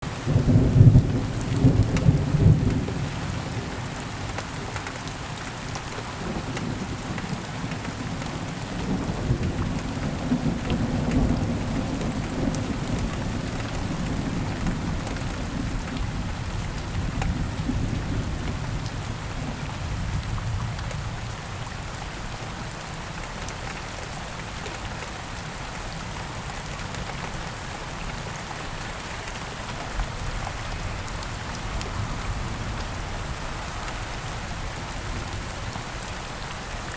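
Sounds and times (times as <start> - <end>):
steady rain falling: 0.0 - 36.9
low thunder rumbling: 6.0 - 22.0.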